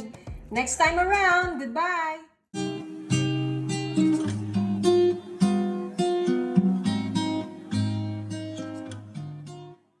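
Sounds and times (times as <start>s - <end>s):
acoustic guitar music: 2.6s - 10.0s.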